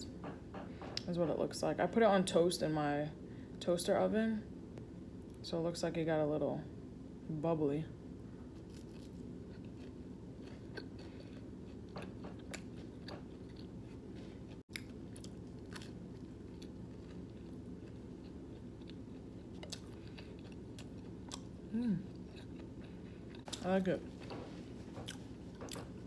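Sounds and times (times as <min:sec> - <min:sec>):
steady low hum: 0:00.0 - 0:26.0
chewing toast crunches: 0:08.6 - 0:23.6.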